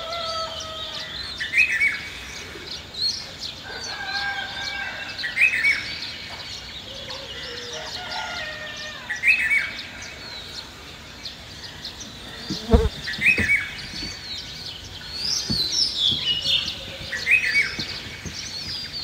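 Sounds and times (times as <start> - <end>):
songbirds chirping: 0.0 - 19.0
dull knock: 12.5 - 14.4, 15.2 - 19.0.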